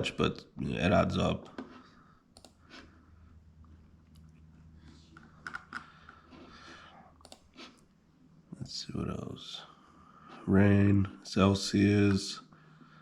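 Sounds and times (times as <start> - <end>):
low steady hum: 0.0 - 13.0
faint typing-like clicks: 2.3 - 2.6, 7.2 - 7.5.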